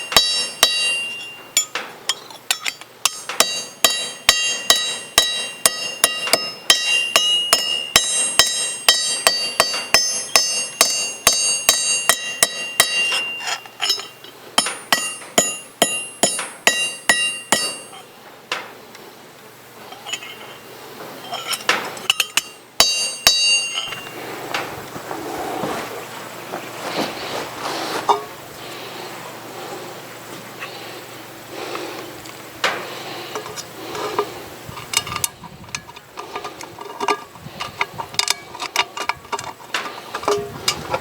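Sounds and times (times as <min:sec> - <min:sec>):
hammer ringing on metal: 0:00.0 - 0:01.7, 0:02.5 - 0:18.1, 0:22.1 - 0:24.1.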